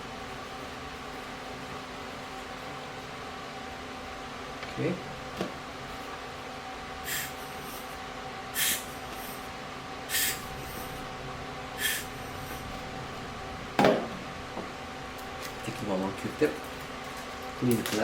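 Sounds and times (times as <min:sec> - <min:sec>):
short puffs of air: 0:07.0 - 0:09.5, 0:10.1 - 0:11.0, 0:11.8 - 0:12.6.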